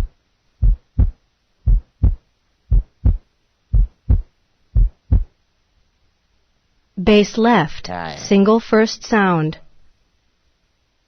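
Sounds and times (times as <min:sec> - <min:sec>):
heart sounds lub-dub: 0:00.0 - 0:05.4.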